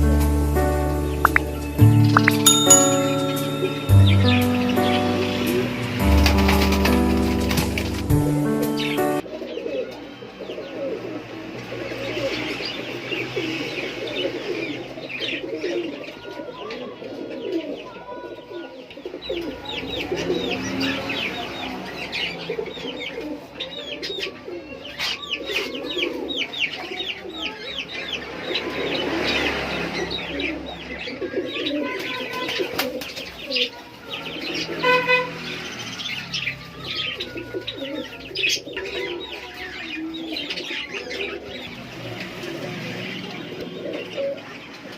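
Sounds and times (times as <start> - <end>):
small birds chirping rapidly: 1.0 - 2.6, 23.7 - 42.3
pigeons cooing: 9.4 - 20.6, 24.2 - 26.7, 36.8 - 41.8, 43.4 - 44.9.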